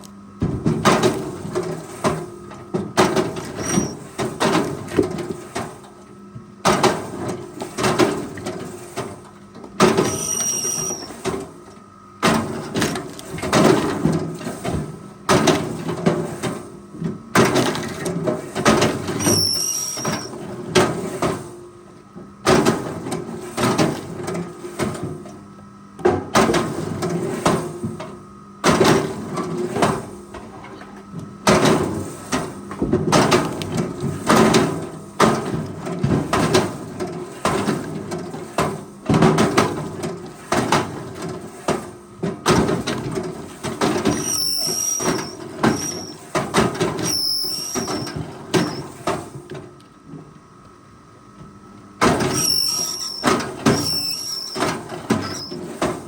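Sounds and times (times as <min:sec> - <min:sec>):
brief high squeaks: 0:03.6 - 0:04.0, 0:10.1 - 0:11.2, 0:19.2 - 0:20.3, 0:44.1 - 0:46.2, 0:47.0 - 0:48.9, 0:52.3 - 0:55.6
heavy clunks and knocks: 0:29.8 - 0:41.0.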